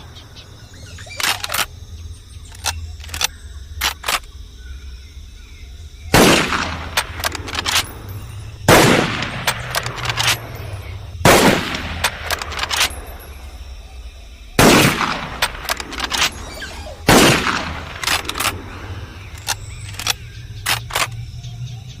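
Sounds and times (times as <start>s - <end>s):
sharp clicks: 0.8s - 1.8s, 2.4s - 4.3s, 6.2s - 13.2s, 14.6s - 21.2s
rifle shots with echo: 6.1s - 13.4s, 14.6s - 21.2s.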